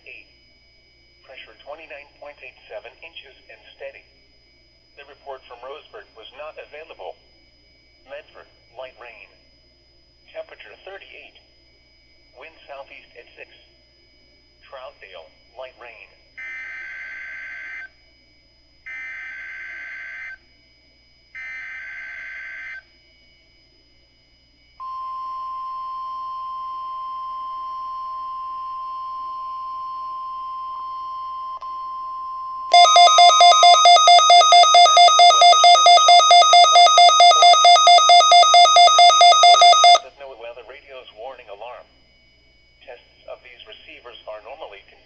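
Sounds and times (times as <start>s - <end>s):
radio alarm beeping rapidly: 24.8s - 40.0s
steady alert tone: 32.7s - 40.0s.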